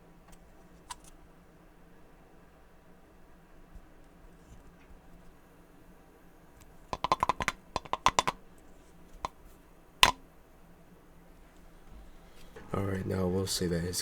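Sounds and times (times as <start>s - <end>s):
light clicks and taps: 6.6s - 9.4s.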